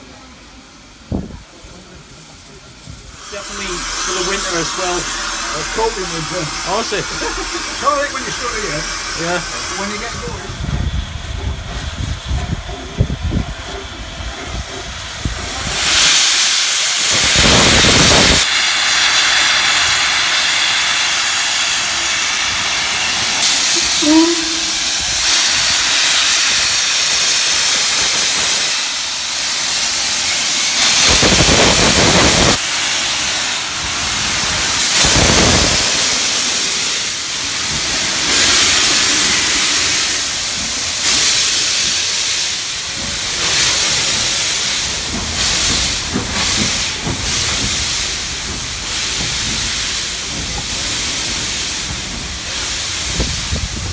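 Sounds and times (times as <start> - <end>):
heavy gusts of steam: 0.0 - 53.9
steam locomotive hissing: 0.0 - 53.9.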